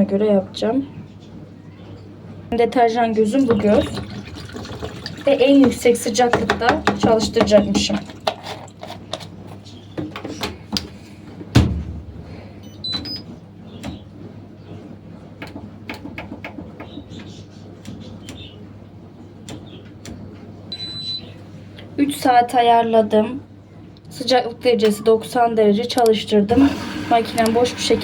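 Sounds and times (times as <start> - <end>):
washing machine clicks and knocks: 5.5 - 8.1, 11.5 - 14.1, 15.4 - 18.5
heavy thump: 11.5 - 12.4
control panel electronic beeps: 12.6 - 13.3, 20.7 - 21.3.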